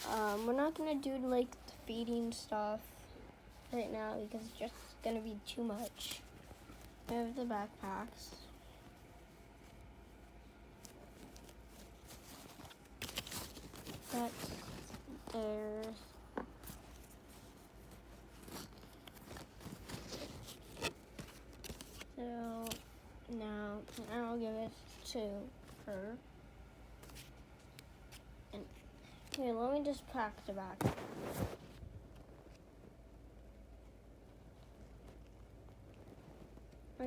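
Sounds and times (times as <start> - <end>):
doll accessories rustling and clicking: 0.0 - 2.9, 3.5 - 10.0, 10.7 - 26.0.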